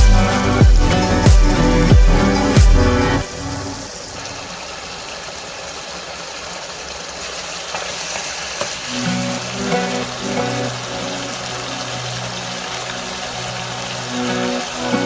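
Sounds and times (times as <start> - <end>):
background music: 0.0 - 4.1, 8.9 - 15.0
chicken sizzling in a pan: 3.3 - 15.0.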